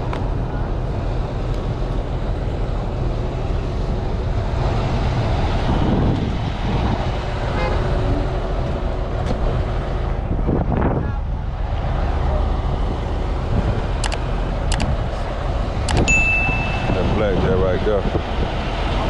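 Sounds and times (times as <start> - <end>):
truck diesel engine rumbling: 0.0 - 19.0
faint steady tone: 16.1 - 17.2.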